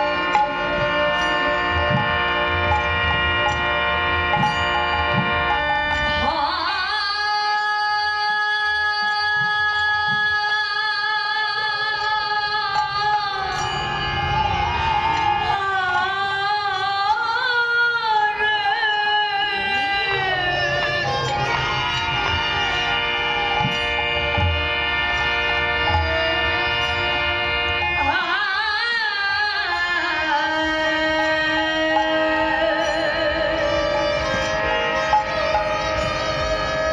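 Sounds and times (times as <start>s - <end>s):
sustained instrumental drone: 0.0s - 6.4s, 12.0s - 17.7s, 18.6s - 28.2s, 29.6s - 36.9s.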